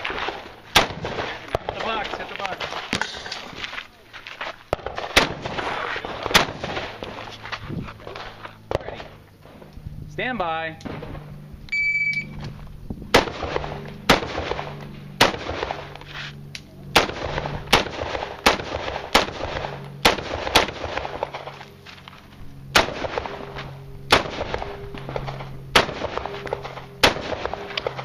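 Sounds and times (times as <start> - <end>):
rifle shots: 0.0 - 3.2, 4.7 - 7.1, 10.8 - 11.2, 13.1 - 16.0, 16.9 - 21.6, 22.7 - 28.0.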